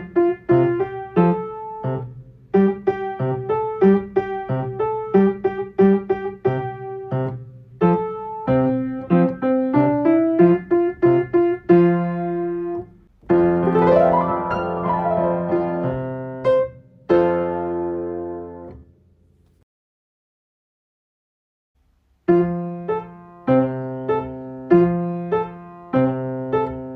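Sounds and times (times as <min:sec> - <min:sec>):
piano playing: 0:00.0 - 0:18.8.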